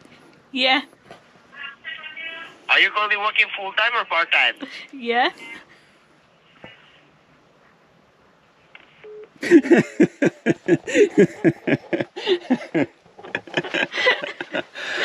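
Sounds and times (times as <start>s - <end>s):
person's voice on a phone call: 1.6s - 4.7s.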